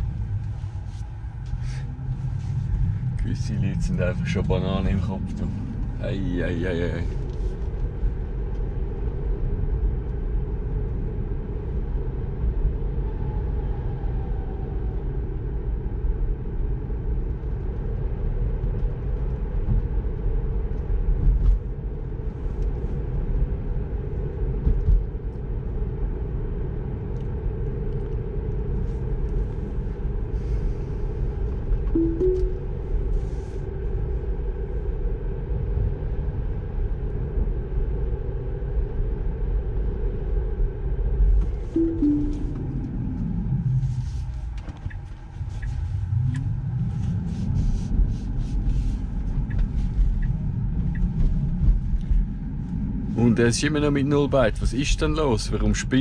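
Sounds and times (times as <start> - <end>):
road and tyre rumble: 0.0 - 31.9, 42.6 - 54.7.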